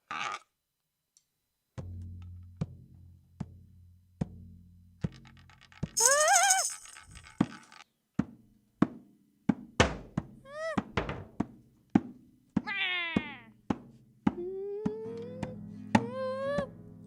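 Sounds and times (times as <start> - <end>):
wavering high-pitched cry: 6.0 - 7.0.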